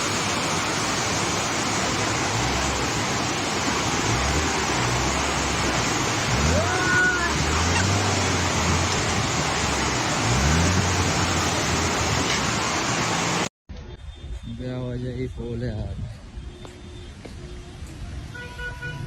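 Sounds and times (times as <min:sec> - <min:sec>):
heavy rain pouring: 0:00.0 - 0:13.5
low engine hum: 0:00.0 - 0:13.5.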